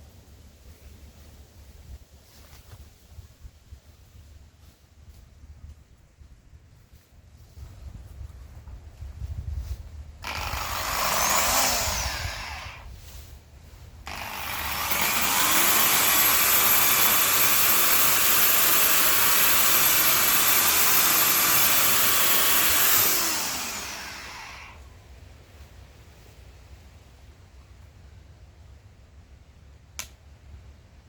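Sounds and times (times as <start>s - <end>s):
power tool motor whining: 10.2s - 12.9s, 14.1s - 24.8s.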